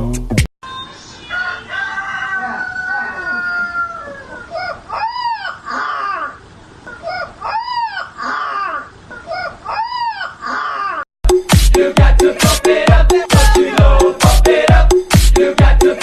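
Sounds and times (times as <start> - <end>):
animal crying: 1.4 - 11.0.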